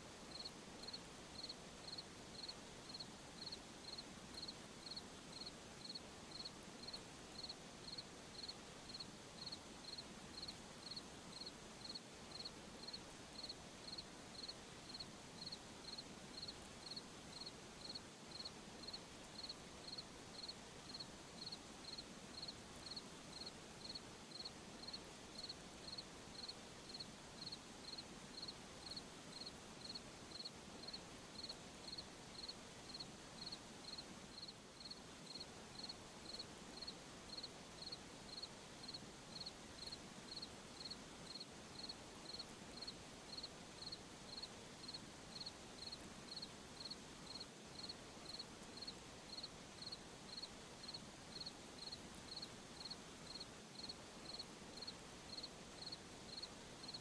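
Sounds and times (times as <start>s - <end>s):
faint night ambience hiss: 0.0s - 57.0s
cricket chirping: 0.3s - 57.0s.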